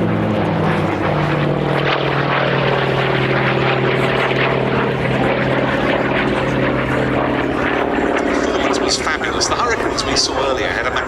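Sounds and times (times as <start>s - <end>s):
propeller aircraft engine droning: 0.0s - 11.0s.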